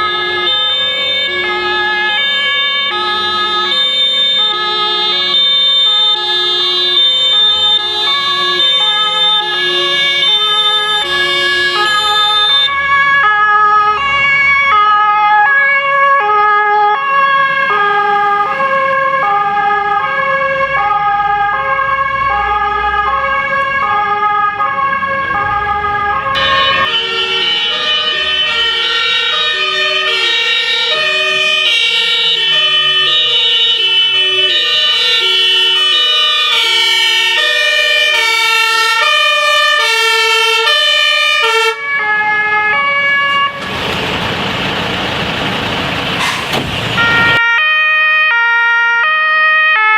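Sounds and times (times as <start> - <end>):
two-tone fire engine sirens: 0.0 - 49.9
bright sharp horns: 7.7 - 12.7, 26.4 - 28.6
engine rumble: 41.9 - 47.4.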